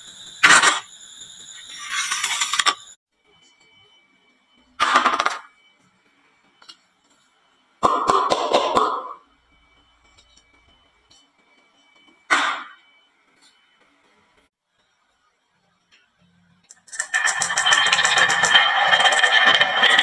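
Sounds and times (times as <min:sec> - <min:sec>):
marbles clattering down wooden run: 0:16.9 - 0:20.0.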